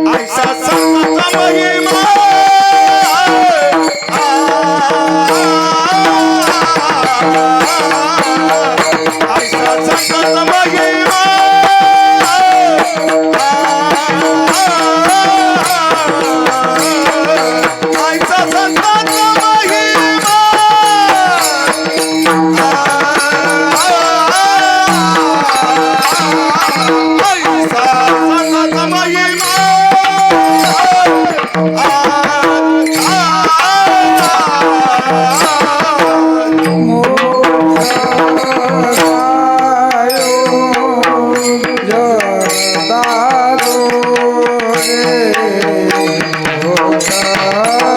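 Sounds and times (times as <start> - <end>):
person singing sliding melody: 0.0 - 47.9
tabla strokes: 0.0 - 47.9.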